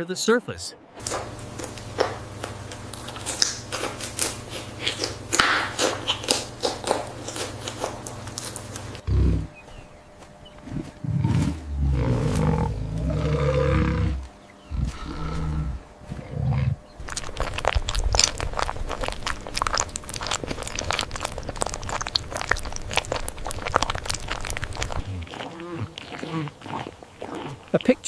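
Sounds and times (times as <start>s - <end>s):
crunching clicks: 1.0s - 9.0s, 17.0s - 27.9s
animal roaring: 9.0s - 9.6s, 10.6s - 16.9s, 20.3s - 27.8s.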